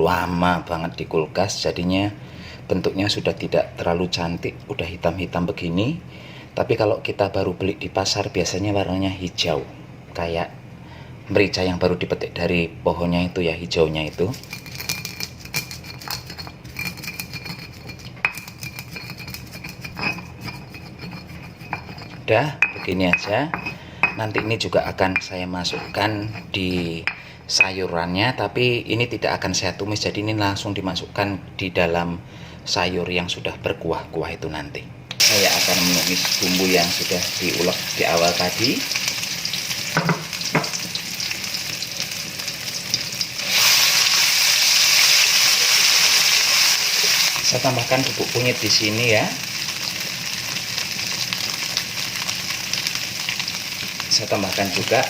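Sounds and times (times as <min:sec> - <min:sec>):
pestle grinding in a mortar: 0:14.1 - 0:27.2
oil sizzling in a wok: 0:35.2 - 0:55.0
pestle knock: 0:40.0 - 0:40.8.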